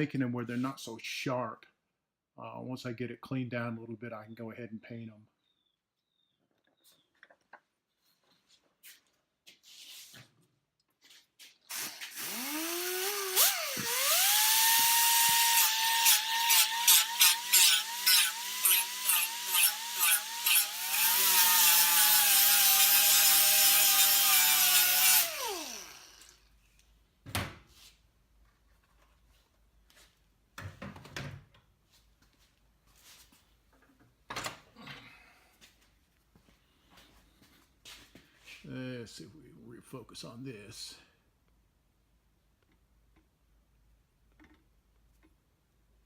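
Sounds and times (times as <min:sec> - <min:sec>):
angle grinder grinding metal: 0:11.7 - 0:26.4.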